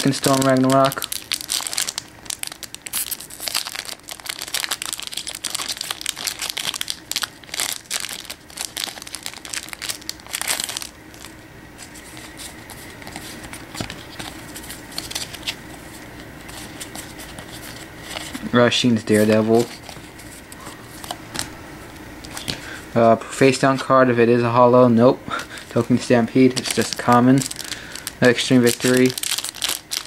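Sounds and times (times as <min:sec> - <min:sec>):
foil wrapper crinkling and tearing: 0:00.0 - 0:18.4, 0:25.5 - 0:30.0.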